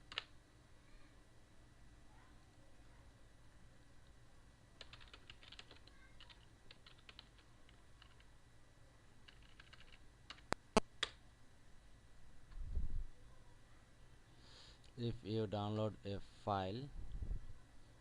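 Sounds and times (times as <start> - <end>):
keyboard typing clicks: 0.0 - 0.3, 4.8 - 8.3, 9.3 - 11.2.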